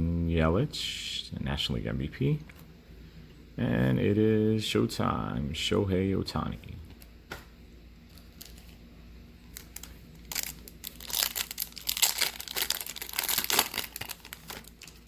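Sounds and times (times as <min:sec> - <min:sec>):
wrapper tearing and crinkling: 0:08.1 - 0:08.8, 0:09.4 - 0:15.0.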